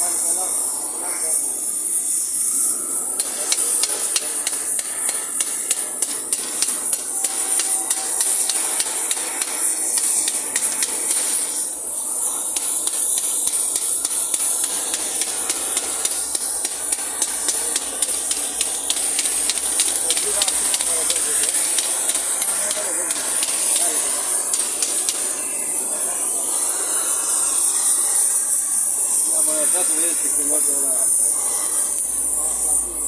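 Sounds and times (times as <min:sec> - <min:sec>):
steady high hiss: 0:00.0 - 0:33.0
metallic tapping of tool on metal: 0:03.2 - 0:25.5.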